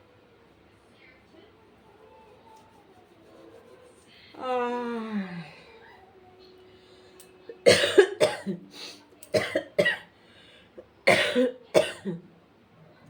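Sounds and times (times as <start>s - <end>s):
woman coughing: 7.6s - 8.7s, 9.3s - 10.1s, 11.1s - 12.2s.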